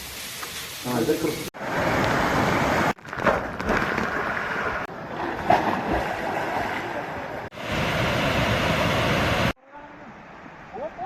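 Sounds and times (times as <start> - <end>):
wind and rain rushing: 1.6 - 3.6, 7.5 - 10.8.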